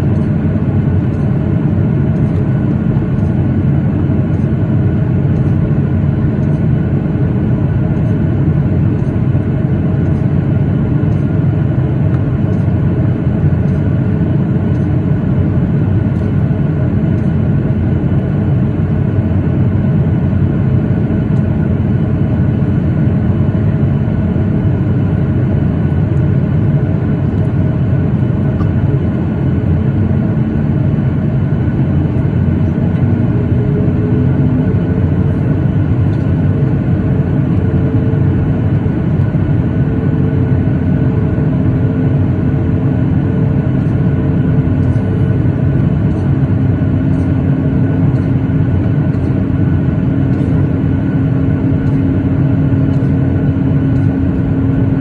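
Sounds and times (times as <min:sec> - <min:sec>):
faint steady hums: 0:00.0 - 0:55.0
jet engine roar in cabin: 0:00.0 - 0:55.0.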